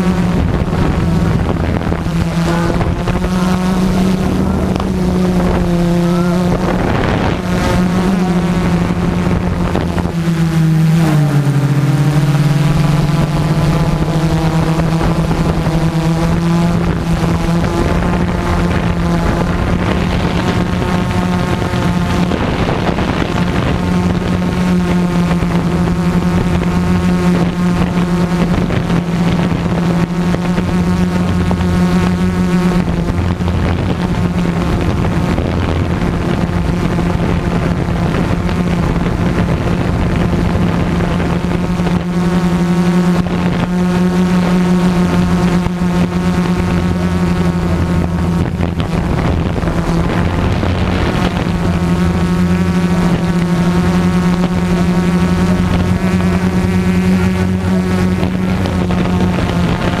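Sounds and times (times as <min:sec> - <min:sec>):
drone propellers buzzing: 0:00.0 - 1:00.0.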